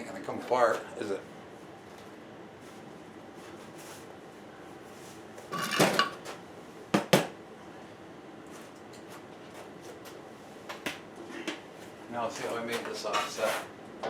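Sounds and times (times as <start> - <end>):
metal duct pipe rattling and clanking: 5.6 - 6.2.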